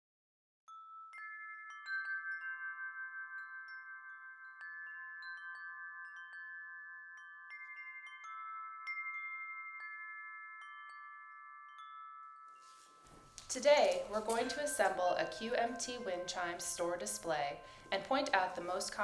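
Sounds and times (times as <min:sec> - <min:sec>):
wind chime ringing: 0:00.7 - 0:19.0
wind chime strike clicks: 0:00.7 - 0:19.0.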